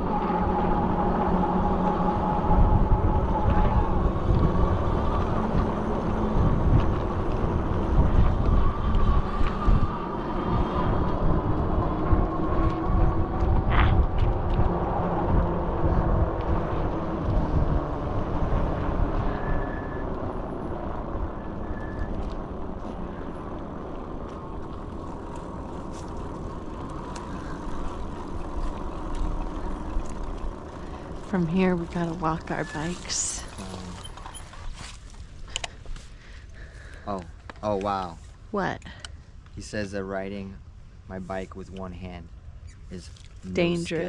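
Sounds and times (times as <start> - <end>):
tyres rumbling: 0.0 - 38.0
wind buffeting microphone: 0.0 - 38.6.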